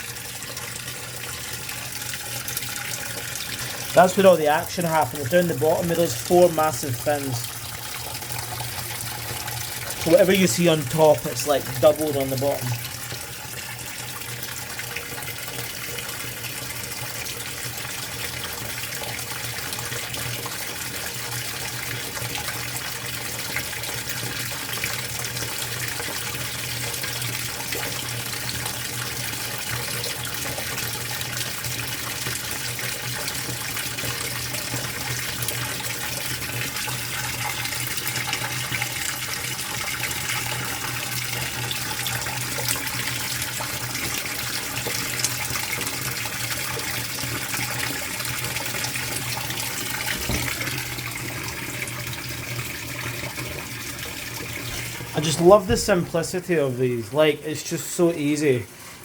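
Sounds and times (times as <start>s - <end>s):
water pouring into washer tub: 0.0s - 59.0s.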